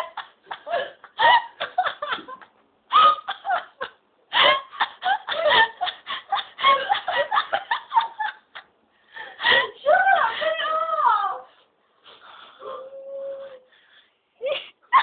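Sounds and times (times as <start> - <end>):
hearty laughter: 0.0 - 8.8.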